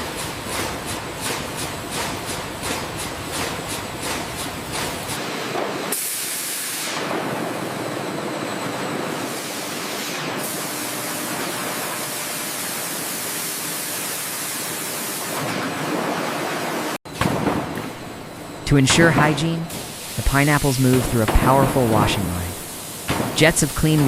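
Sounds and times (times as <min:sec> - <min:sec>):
water jets spraying: 0:18.7 - 0:24.0.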